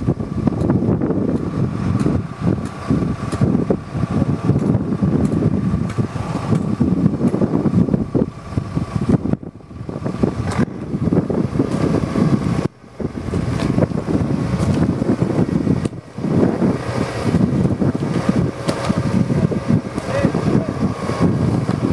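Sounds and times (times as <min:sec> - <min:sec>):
excavator engine rumbling: 0:00.0 - 0:21.9.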